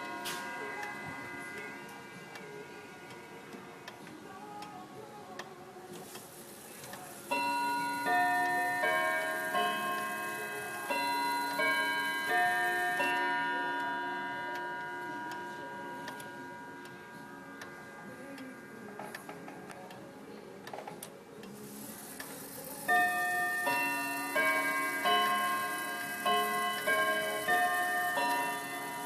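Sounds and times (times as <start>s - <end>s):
clock chiming a tune: 0.0s - 2.6s, 7.2s - 18.4s, 22.4s - 29.0s
faint clock ticking: 0.0s - 29.0s.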